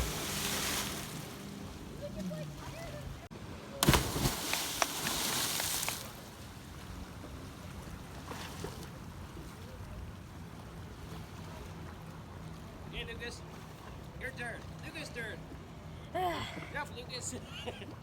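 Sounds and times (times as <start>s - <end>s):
water spray and churning: 0.0s - 12.5s
person splashing into water: 3.8s - 6.2s.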